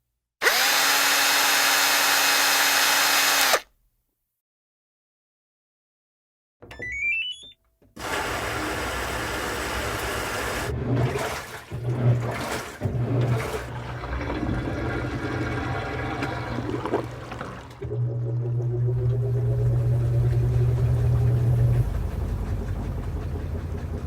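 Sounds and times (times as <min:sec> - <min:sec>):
rising electronic beeps: 0:06.8 - 0:07.5
low hum: 0:17.8 - 0:24.0.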